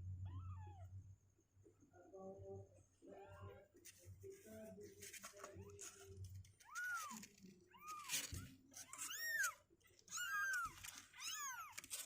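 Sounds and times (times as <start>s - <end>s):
kittens mewing: 5.5s - 12.0s.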